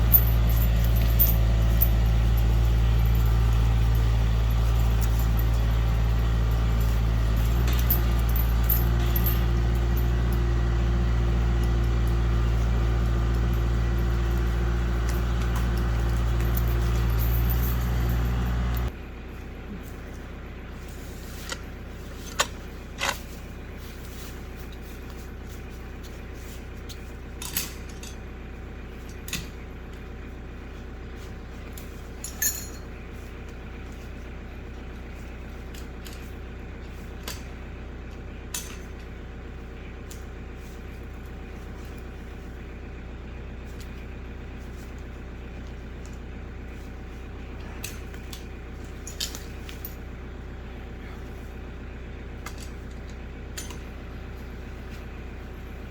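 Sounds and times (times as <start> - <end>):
metallic clinks and clanks: 0.0 - 19.0, 26.9 - 28.3, 31.8 - 33.0, 38.5 - 39.1, 47.6 - 50.1, 52.4 - 54.0
diesel tractor engine running: 0.0 - 55.9.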